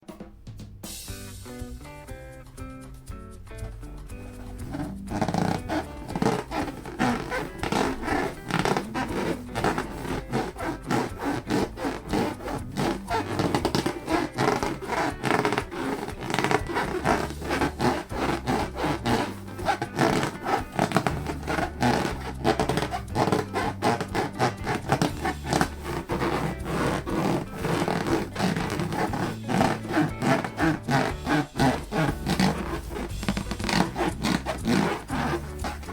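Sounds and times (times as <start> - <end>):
background music: 0.0 - 35.9
hands rubbing latex balloons: 4.0 - 35.9.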